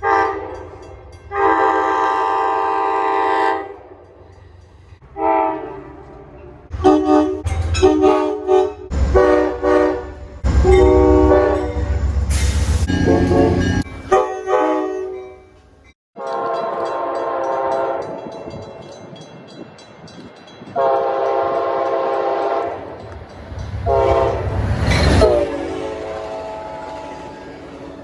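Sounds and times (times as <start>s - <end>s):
locomotive air horn: 0.0s - 3.9s, 5.1s - 15.5s, 16.2s - 18.4s, 20.8s - 22.9s, 23.8s - 28.0s
train passing rumble: 0.0s - 28.0s.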